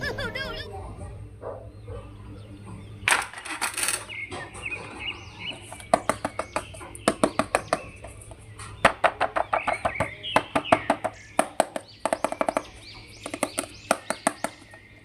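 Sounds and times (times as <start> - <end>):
birds chirping: 0.0 - 15.0
plastic figures clicking and tapping: 5.6 - 14.8.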